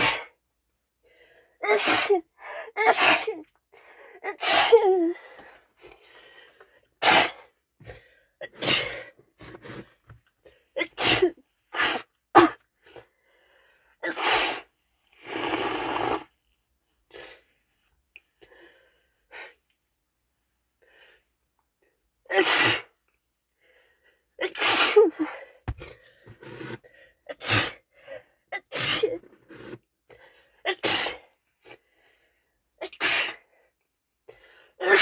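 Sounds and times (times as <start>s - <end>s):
woman sneezing: 1.6s - 3.4s, 4.2s - 5.2s, 10.8s - 12.6s, 24.4s - 25.4s, 34.8s - 35.0s.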